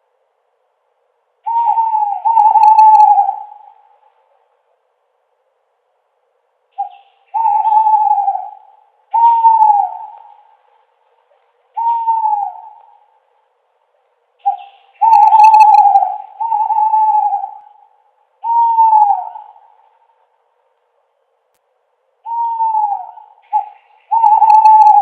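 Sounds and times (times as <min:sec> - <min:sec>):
owl hooting: 0:01.4 - 0:04.4, 0:06.7 - 0:13.3, 0:14.4 - 0:20.3, 0:22.2 - 0:25.0.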